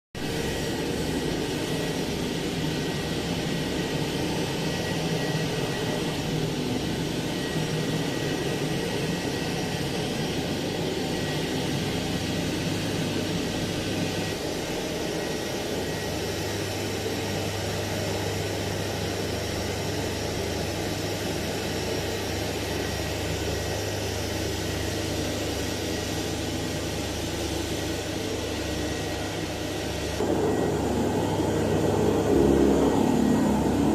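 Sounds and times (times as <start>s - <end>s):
vacuum cleaner motor running: 0.2s - 33.9s
faint steady whine: 22.4s - 33.9s.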